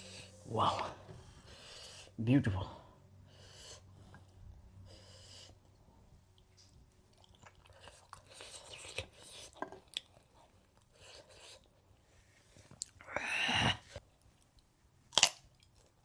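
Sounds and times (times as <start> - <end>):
person chewing food: 6.3 - 11.7, 14.2 - 16.0.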